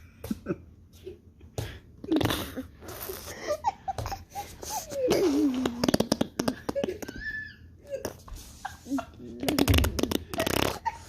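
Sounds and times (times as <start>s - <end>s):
child laughing and giggling: 3.3s - 5.8s
child making mouth fart sounds: 5.1s - 6.6s, 9.4s - 10.8s.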